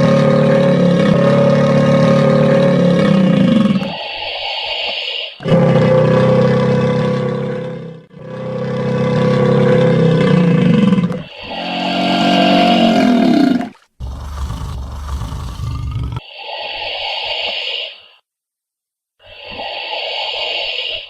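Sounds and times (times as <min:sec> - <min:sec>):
crocodile bellowing: 0:00.0 - 0:04.0, 0:05.4 - 0:16.5.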